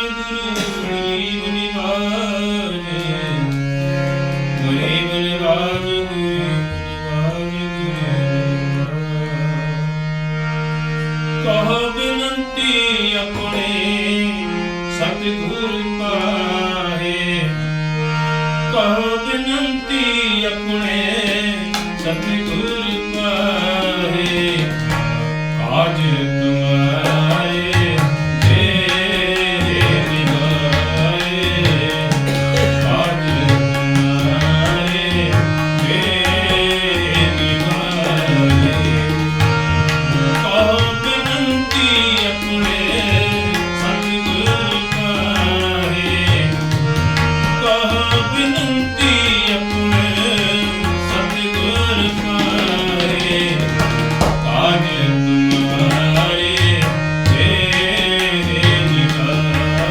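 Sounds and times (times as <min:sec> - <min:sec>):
tabla rhythm: 0:00.5 - 0:01.2, 0:02.8 - 0:06.8, 0:13.3 - 0:13.9, 0:20.8 - 0:26.1, 0:26.8 - 0:59.9.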